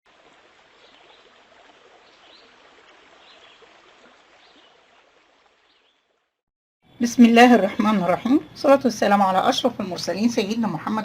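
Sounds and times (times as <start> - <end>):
flowing water: 0.1 - 6.4.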